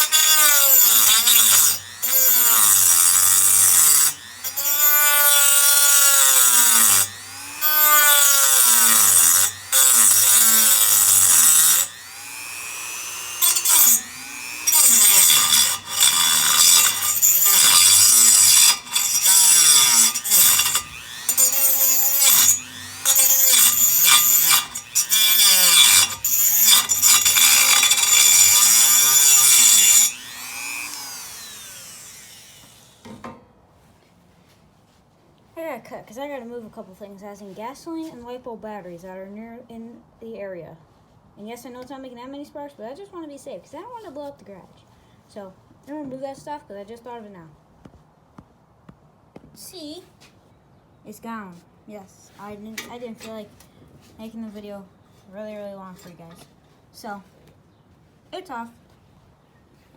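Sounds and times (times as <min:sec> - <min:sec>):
power cutting tool cutting metal: 0:00.0 - 0:33.1.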